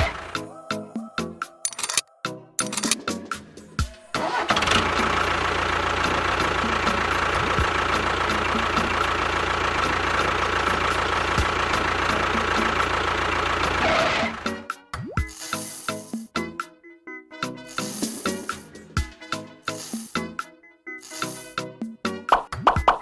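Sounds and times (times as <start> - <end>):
small motor running: 2.6 - 3.0, 21.0 - 21.5.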